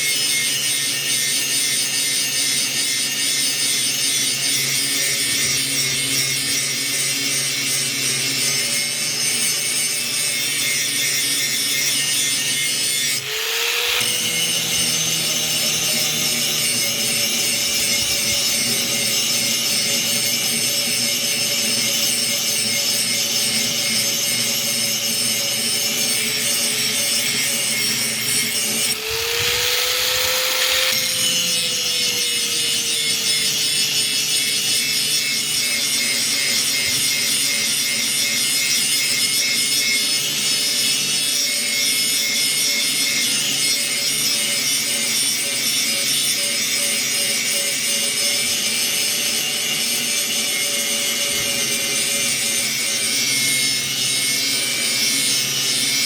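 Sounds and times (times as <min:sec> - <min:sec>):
grinder motor hum: 0:06.0 - 0:33.6
axe blade grinding: 0:12.9 - 0:18.6, 0:27.9 - 0:31.8.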